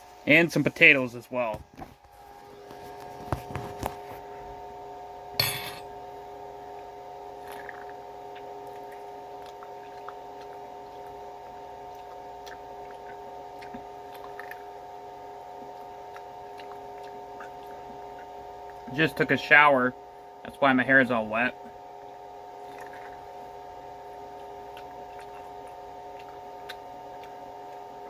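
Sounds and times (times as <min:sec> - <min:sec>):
steady electrical hum: 0:00.0 - 0:28.0
sharp clink: 0:05.4 - 0:05.9.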